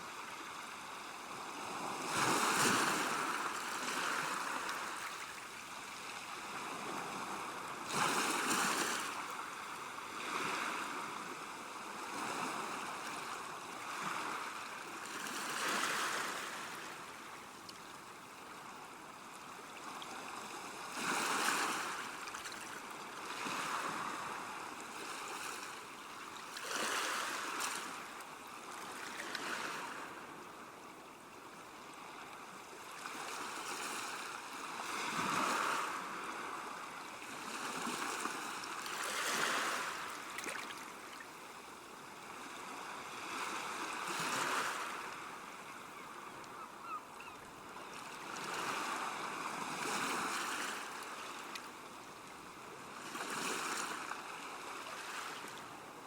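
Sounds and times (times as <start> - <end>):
river water washing at bank: 34.2 - 52.4.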